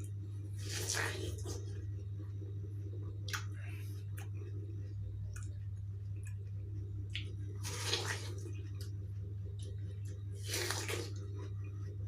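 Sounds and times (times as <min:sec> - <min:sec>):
steady low hum: 0:00.0 - 0:12.0
wet chewing of watermelon: 0:00.6 - 0:01.7, 0:07.1 - 0:08.9, 0:09.6 - 0:11.6.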